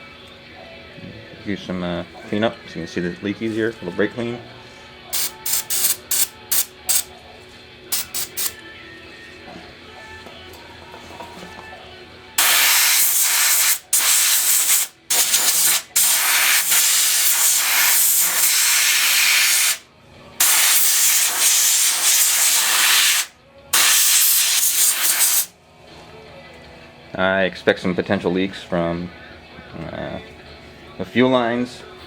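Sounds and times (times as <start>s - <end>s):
aerosol can spraying: 5.2s - 7.1s, 7.9s - 8.6s, 12.4s - 19.8s, 20.4s - 25.5s.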